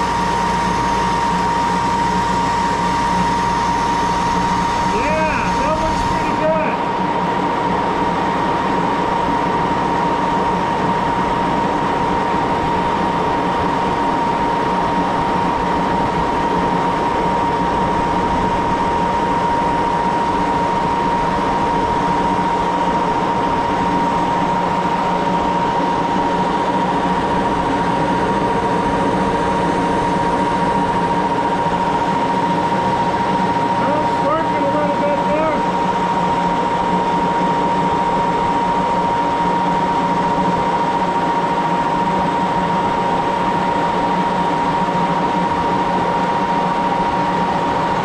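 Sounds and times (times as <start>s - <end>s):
lathe running with high whine: 0.0s - 48.0s.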